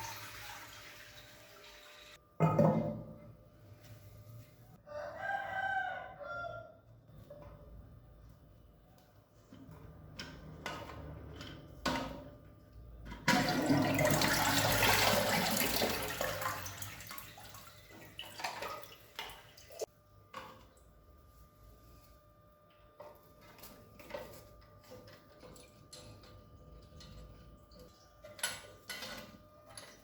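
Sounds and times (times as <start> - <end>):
toilet flush water rushing: 0.0 - 2.2, 13.3 - 19.8.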